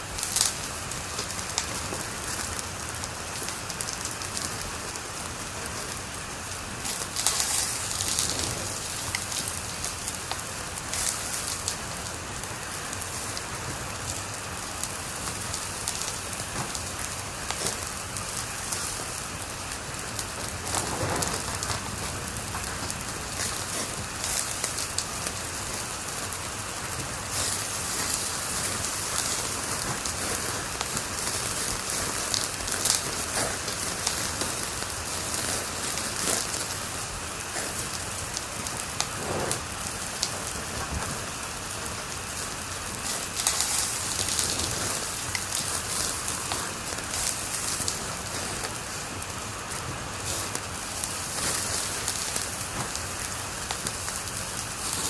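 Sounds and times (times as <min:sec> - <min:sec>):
wood fire crackling: 0:00.0 - 0:55.0.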